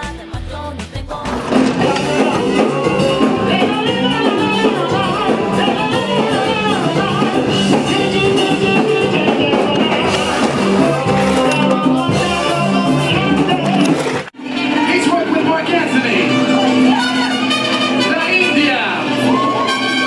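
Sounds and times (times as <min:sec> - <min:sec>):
drums: 0:00.0 - 0:14.4
person singing: 0:00.0 - 0:15.0
guitar: 0:00.0 - 0:20.0.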